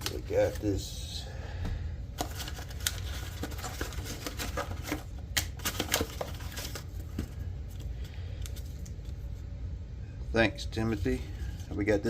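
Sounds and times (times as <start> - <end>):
packaging crackling and rustling: 2.2 - 9.3.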